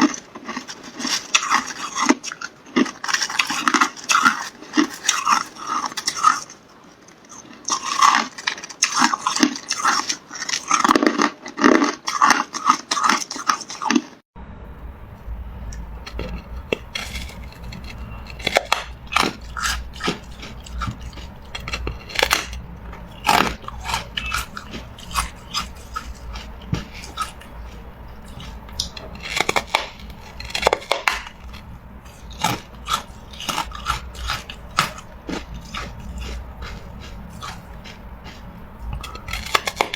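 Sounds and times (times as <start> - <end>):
ice being chewed and crunched: 0.0 - 14.2, 15.7 - 39.9
steady low hum: 14.4 - 39.9.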